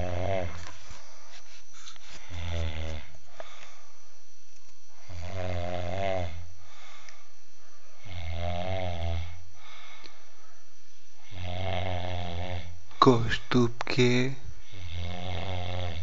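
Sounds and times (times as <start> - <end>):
man snoring: 0.0 - 0.7, 2.1 - 3.6, 4.9 - 6.9, 8.0 - 10.0, 11.2 - 16.0.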